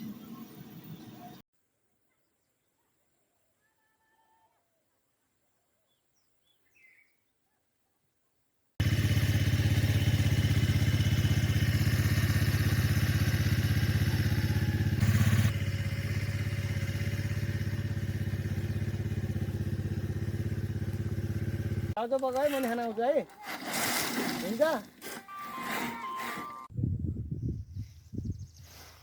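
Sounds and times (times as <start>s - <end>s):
engine running with low pulse: 8.8s - 22.0s.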